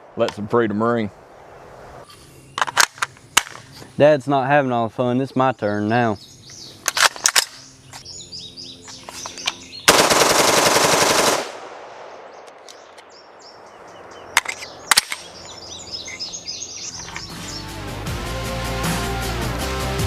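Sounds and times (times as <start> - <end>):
birds chirping: 0.0 - 18.0
rifle firing: 9.9 - 13.4.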